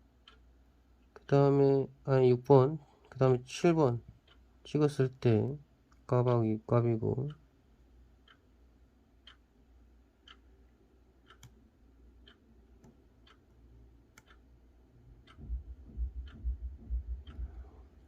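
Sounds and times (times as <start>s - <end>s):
faint even ticking: 8.1s - 8.6s, 9.2s - 18.0s
low thumps: 15.3s - 18.0s.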